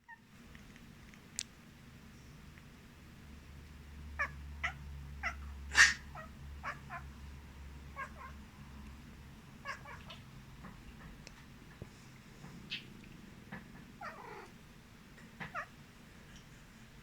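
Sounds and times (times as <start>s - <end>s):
cat meowing and chirping: 4.2s - 7.1s, 7.9s - 8.4s, 9.6s - 10.3s, 14.0s - 14.6s, 15.4s - 15.8s.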